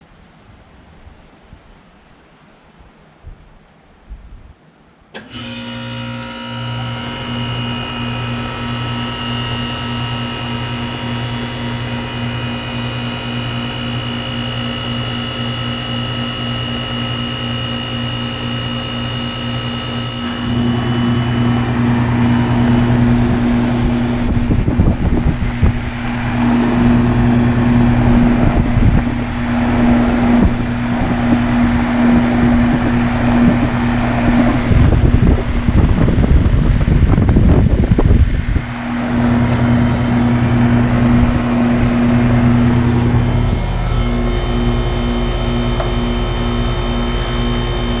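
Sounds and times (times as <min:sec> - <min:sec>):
heat pump compressor humming: 0:05.1 - 0:48.0
gusty rush of air: 0:21.8 - 0:39.4.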